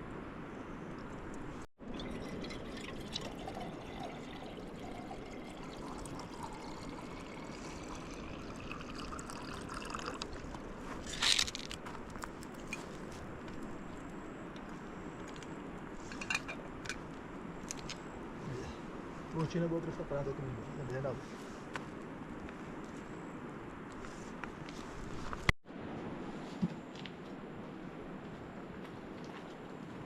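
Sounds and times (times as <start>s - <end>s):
water running: 1.9s - 10.6s.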